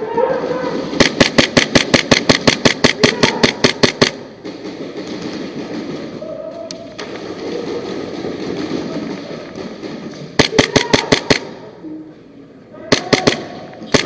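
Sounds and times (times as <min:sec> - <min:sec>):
airsoft gun shots: 0:00.8 - 0:05.4, 0:09.8 - 0:11.7, 0:12.9 - 0:14.0.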